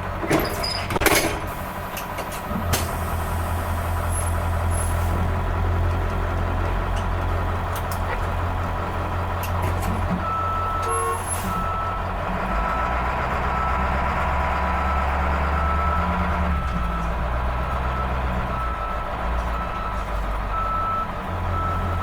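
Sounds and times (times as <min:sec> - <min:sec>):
diesel engine running: 0:00.0 - 0:22.0
back-up alarm beeping: 0:10.2 - 0:12.0.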